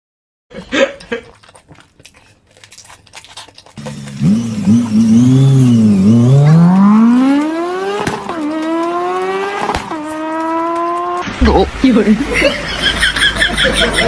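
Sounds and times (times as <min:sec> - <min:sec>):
vehicle engine revving: 0:03.8 - 0:13.0.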